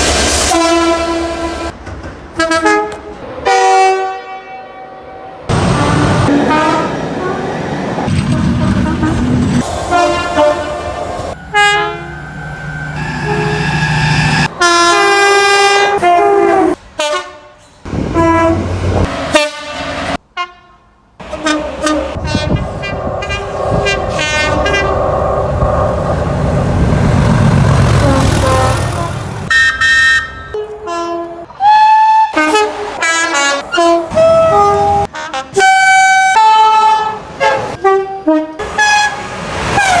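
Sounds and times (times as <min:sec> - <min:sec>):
train horn blasts: 0:02.4 - 0:07.5, 0:08.3 - 0:25.0, 0:28.0 - 0:39.2
train running with low rumble: 0:05.5 - 0:29.5, 0:32.4 - 0:40.0.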